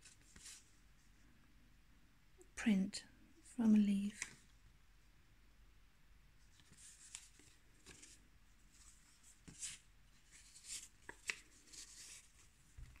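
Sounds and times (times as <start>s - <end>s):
paper pages rustling: 0.0s - 0.7s, 4.1s - 4.5s, 6.5s - 13.0s.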